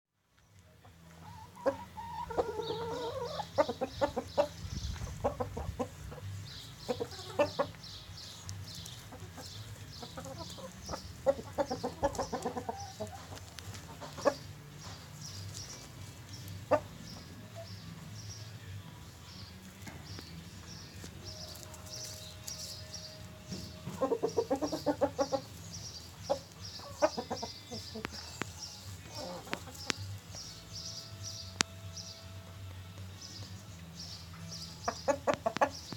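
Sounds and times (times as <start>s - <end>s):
chickens clucking: 0.7s - 32.2s, 33.2s - 35.9s.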